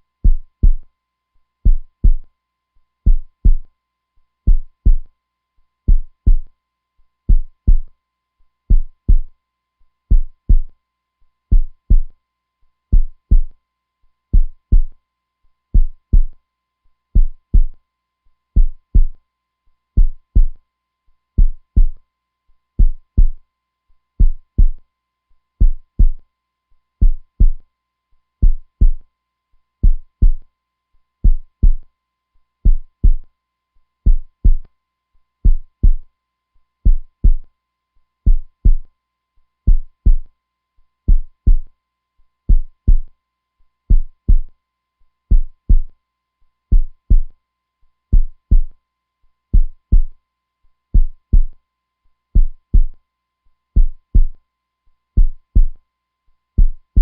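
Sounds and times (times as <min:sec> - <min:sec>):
heartbeat thumps: 0:00.2 - 0:00.8, 0:01.6 - 0:02.2, 0:03.1 - 0:03.6, 0:04.5 - 0:05.1, 0:05.9 - 0:06.5, 0:07.3 - 0:07.9, 0:08.7 - 0:09.3, 0:10.1 - 0:10.7, 0:11.5 - 0:12.1, 0:12.9 - 0:13.5, 0:14.4 - 0:14.9, 0:15.8 - 0:16.3, 0:17.2 - 0:17.8, 0:18.6 - 0:19.2, 0:20.0 - 0:20.6, 0:21.4 - 0:22.0, 0:22.8 - 0:23.4, 0:24.2 - 0:24.8, 0:25.6 - 0:26.2, 0:27.0 - 0:27.6, 0:28.4 - 0:29.0, 0:29.8 - 0:30.4, 0:31.2 - 0:31.8, 0:32.7 - 0:33.2, 0:34.1 - 0:34.6, 0:35.4 - 0:36.0, 0:36.9 - 0:37.4, 0:38.3 - 0:38.8, 0:39.7 - 0:40.3, 0:41.1 - 0:41.7, 0:42.5 - 0:43.1, 0:43.9 - 0:44.5, 0:45.3 - 0:45.9, 0:46.7 - 0:47.3, 0:48.1 - 0:48.7, 0:49.6 - 0:50.1, 0:51.0 - 0:51.5, 0:52.4 - 0:53.0, 0:53.8 - 0:54.4, 0:55.2 - 0:55.8, 0:56.6 - 0:57.0.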